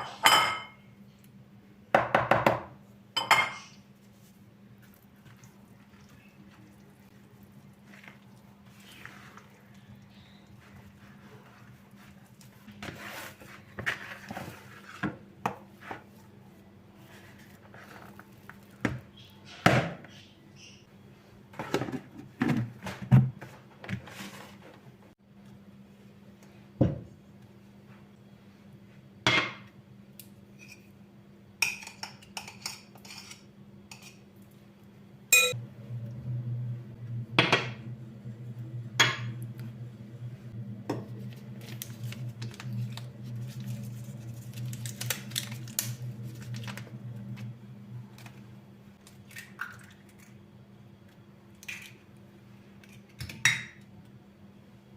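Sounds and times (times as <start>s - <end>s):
dishes and utensils clinking: 0.0s - 0.8s, 3.2s - 3.8s, 35.4s - 35.6s
appliance humming: 33.6s - 54.9s.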